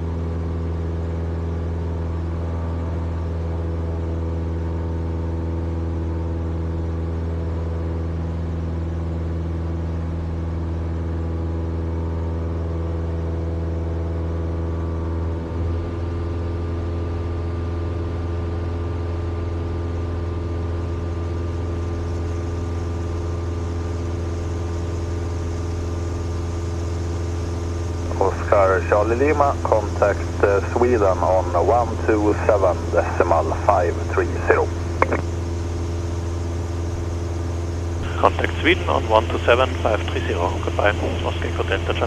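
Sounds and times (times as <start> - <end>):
propeller aircraft engine drone: 0.0 - 42.0.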